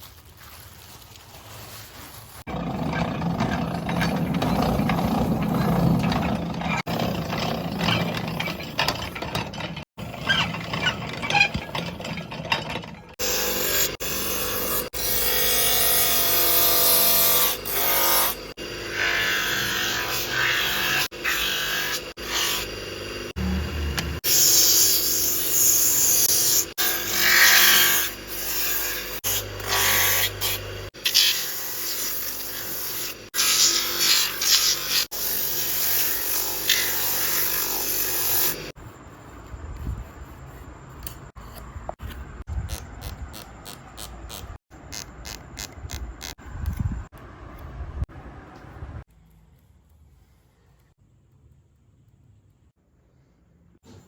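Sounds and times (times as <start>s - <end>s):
scraping or brushing strokes: 0.0s - 2.7s
power tool grinding: 2.4s - 38.8s.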